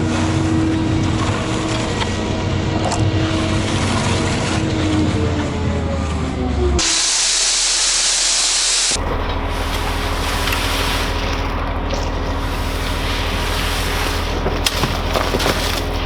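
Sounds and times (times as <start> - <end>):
low engine hum: 0.0 - 6.9, 8.7 - 16.0
engine running: 0.0 - 16.0
hissing spray: 6.8 - 16.0.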